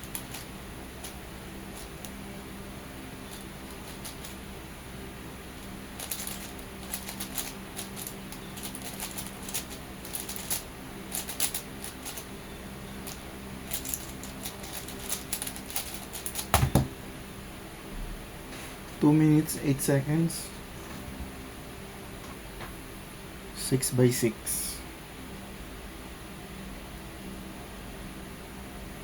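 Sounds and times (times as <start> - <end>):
plastic puzzle cube clicking: 3.3 - 4.4, 6.0 - 12.2, 13.0 - 16.8
louder knock: 16.5 - 17.0.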